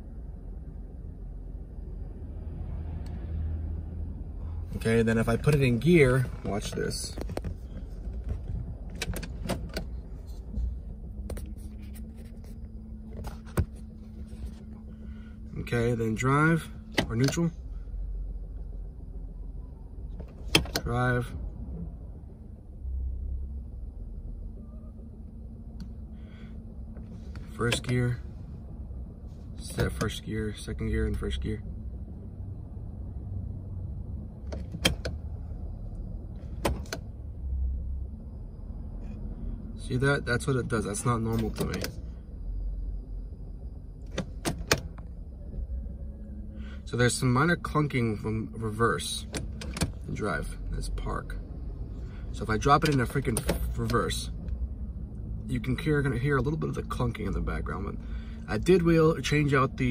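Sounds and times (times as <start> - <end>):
steady hum: 0.0 - 59.9
car engine idling rough: 4.1 - 32.3, 39.0 - 59.9
gear selector clicks and knocks: 4.8 - 10.6, 13.1 - 14.6, 16.8 - 17.5, 20.1 - 21.1, 26.9 - 28.1, 29.6 - 30.2, 34.4 - 35.2, 36.4 - 37.1, 41.2 - 42.0, 44.0 - 45.2, 49.2 - 50.2, 52.6 - 54.6.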